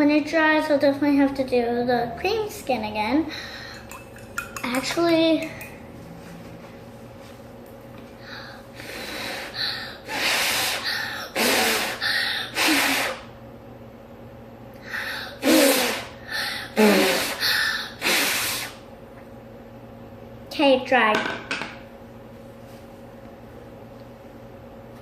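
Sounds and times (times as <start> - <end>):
child blowing puffs of breath: 8.2 - 13.3, 14.8 - 18.8.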